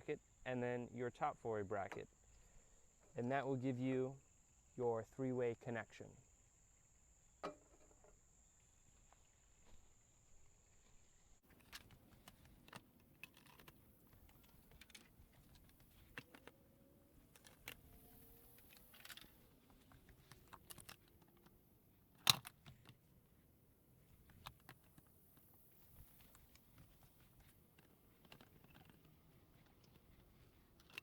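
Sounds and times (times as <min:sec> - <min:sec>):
plastic parts clicking and knocking: 0:11.4 - 0:23.2, 0:24.0 - 0:31.0
sharp plastic snap: 0:22.2 - 0:22.9.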